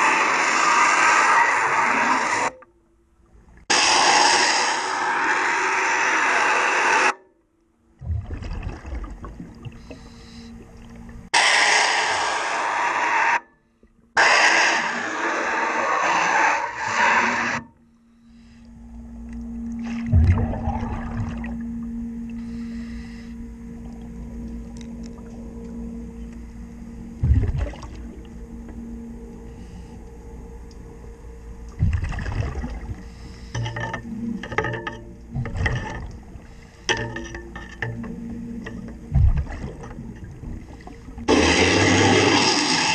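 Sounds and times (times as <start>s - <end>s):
faint steady hum: 0.0s - 14.2s, 14.9s - 42.9s
exhaled bubbles underwater: 8.0s - 10.0s, 19.8s - 22.0s, 27.2s - 28.4s, 31.8s - 36.5s, 37.8s - 42.4s
low rumble: 17.9s - 42.2s.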